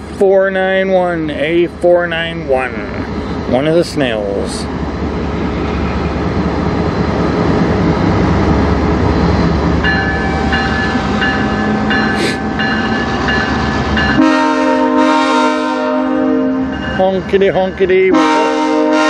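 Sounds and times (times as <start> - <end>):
locomotive engine rumble: 0.0 - 19.0
bell ringing: 9.8 - 14.2, 16.6 - 18.1
locomotive horn blowing: 14.2 - 16.8, 18.1 - 19.0.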